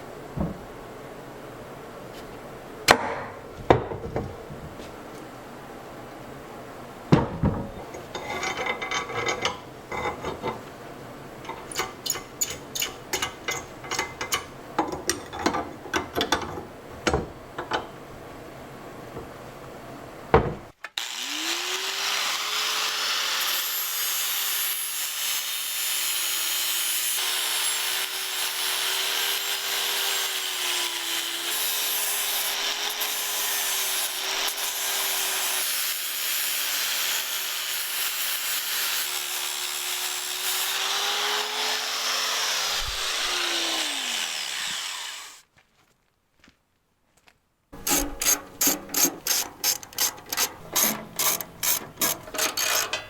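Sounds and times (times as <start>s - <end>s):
small power tool whining: 21.0s - 45.4s
hand tool rasping: 47.8s - 53.0s.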